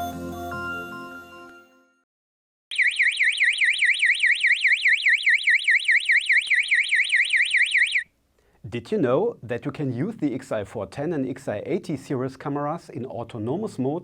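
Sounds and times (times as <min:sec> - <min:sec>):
warbling electronic alarm siren: 0:02.7 - 0:08.1.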